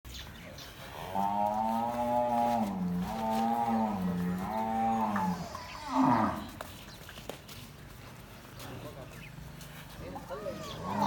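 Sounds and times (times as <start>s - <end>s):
bull bellowing: 0.9s - 6.6s, 10.3s - 11.0s.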